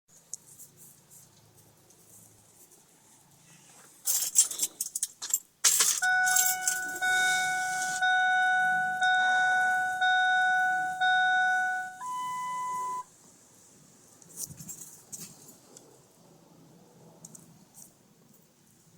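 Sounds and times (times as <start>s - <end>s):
keys jangling: 4.0s - 7.1s
dashboard warning chime: 6.0s - 13.1s.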